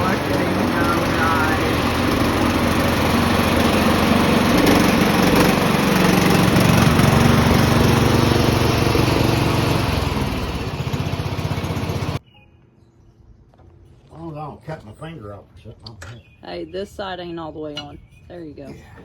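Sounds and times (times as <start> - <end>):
riding lawn mower engine: 0.0 - 12.2.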